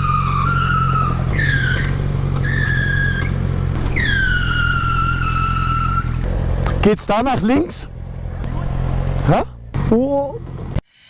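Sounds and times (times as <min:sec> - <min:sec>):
tires squealing: 0:00.0 - 0:10.0
motorcycle engine running: 0:00.2 - 0:10.8.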